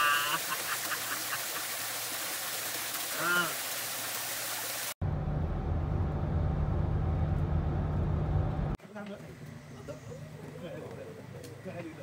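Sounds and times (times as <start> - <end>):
running water rushing: 0.0 - 5.0
low steady rumble: 5.0 - 8.8.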